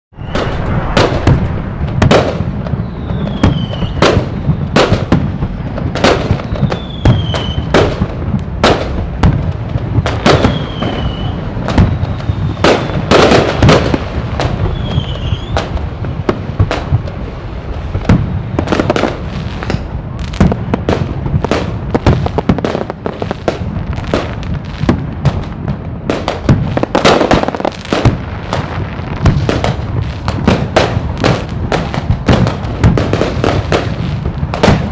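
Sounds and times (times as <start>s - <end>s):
low rumble: 0.1s - 3.1s
falling firework whistles: 0.1s - 8.9s, 10.0s - 15.8s, 17.9s - 22.6s
fireworks bangs and cracks: 0.1s - 34.9s.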